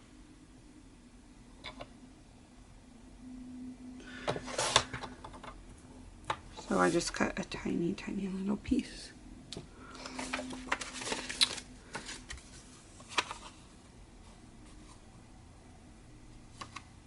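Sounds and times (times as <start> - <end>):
paper rustling: 10.0 - 13.6.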